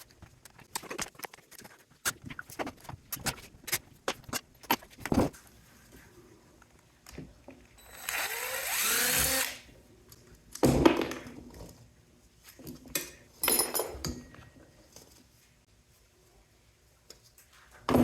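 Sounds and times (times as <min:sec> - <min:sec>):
power drill running: 0:07.8 - 0:09.6.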